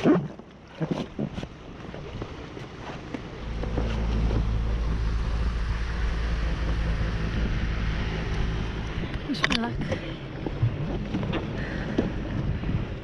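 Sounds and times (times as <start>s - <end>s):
water: 0.0s - 13.0s
wind: 0.0s - 13.0s
wind buffeting microphone: 3.2s - 13.0s.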